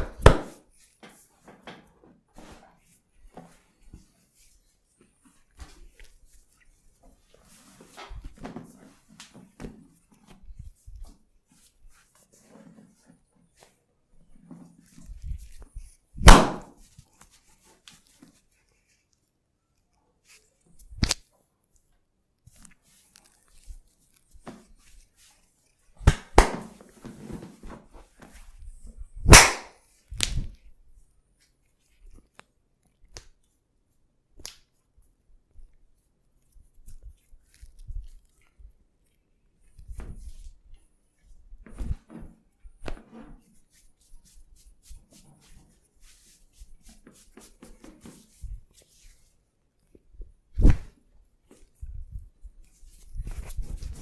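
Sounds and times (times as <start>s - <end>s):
hands slapping skin: 0.0s - 0.6s, 16.2s - 16.8s, 21.0s - 21.2s, 26.0s - 26.7s, 29.2s - 30.6s, 34.4s - 34.7s, 50.6s - 50.9s
rustling of hands and cloth: 0.0s - 54.0s.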